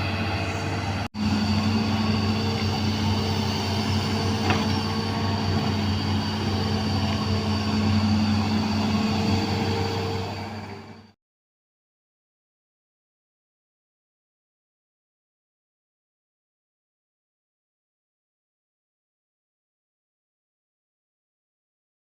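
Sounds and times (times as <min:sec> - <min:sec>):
excavator diesel engine running: 0:00.0 - 0:11.2.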